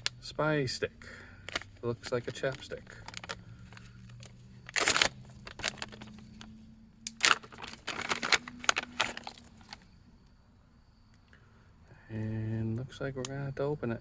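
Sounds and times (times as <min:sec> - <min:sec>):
handling rustles and clicks: 0:01.4 - 0:09.8.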